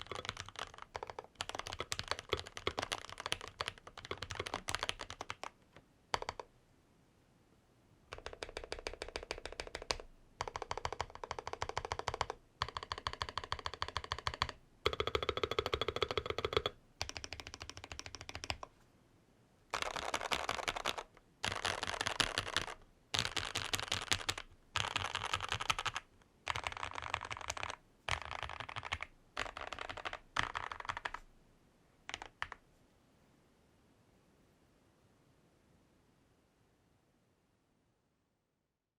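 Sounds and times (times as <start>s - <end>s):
mechanical keyboard typing: 0.0s - 6.5s, 8.1s - 18.7s, 19.7s - 31.3s, 32.1s - 32.6s.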